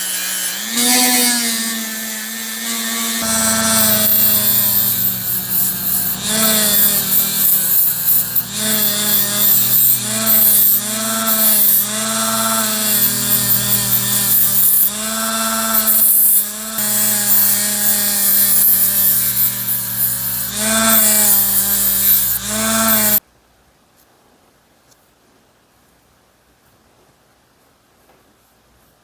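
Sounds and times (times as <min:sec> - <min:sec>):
electric power tool running: 0:00.0 - 0:23.2.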